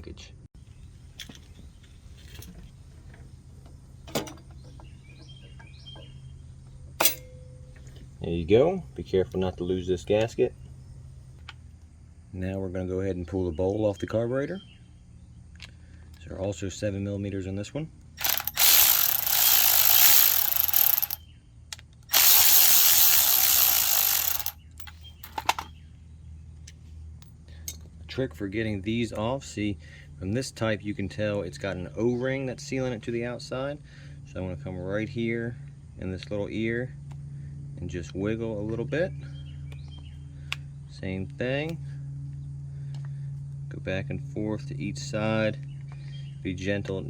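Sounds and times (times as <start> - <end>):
ratchet turning: 18.2 - 21.2, 22.1 - 25.4.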